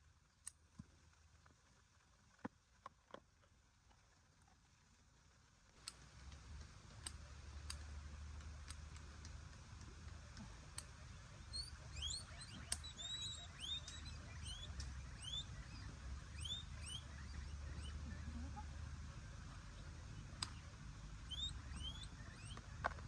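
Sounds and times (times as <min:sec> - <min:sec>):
sharp clicks: 0:05.8 - 0:23.0
high chirps: 0:10.8 - 0:23.0.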